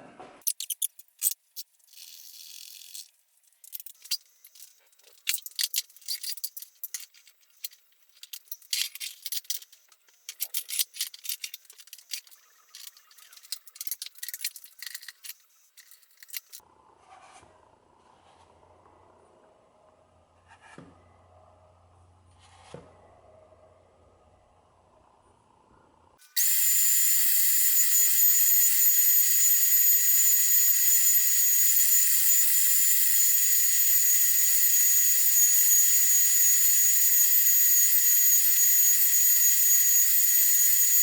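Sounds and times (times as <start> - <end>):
small metal parts clicking and rattling: 0.4 - 16.6, 26.2 - 41.0.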